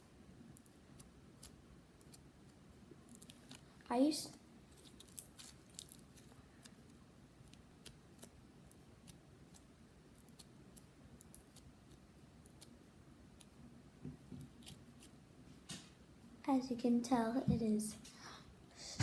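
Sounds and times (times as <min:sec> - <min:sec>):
slime clicking and crackling: 0:00.5 - 0:03.7, 0:04.7 - 0:13.6.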